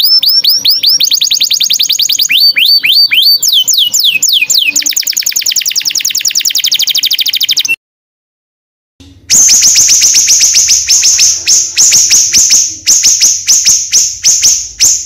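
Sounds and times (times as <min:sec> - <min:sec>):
bird rattling trill: 0:00.0 - 0:07.8, 0:09.3 - 0:15.0
songbird whistled song: 0:00.0 - 0:07.8, 0:09.3 - 0:15.0.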